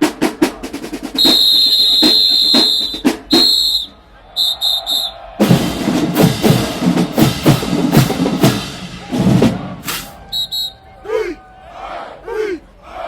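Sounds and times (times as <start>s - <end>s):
drumline marching cadence: 0.0s - 13.0s
whistle blasts: 1.2s - 5.4s, 9.9s - 11.0s.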